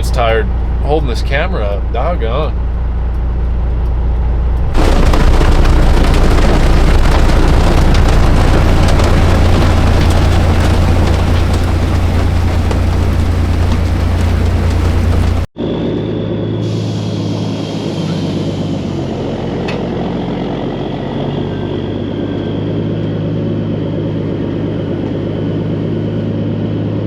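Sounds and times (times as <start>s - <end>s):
diesel truck engine droning: 0.0s - 15.5s, 16.1s - 27.0s
loud rushing crackling noise: 4.6s - 15.5s.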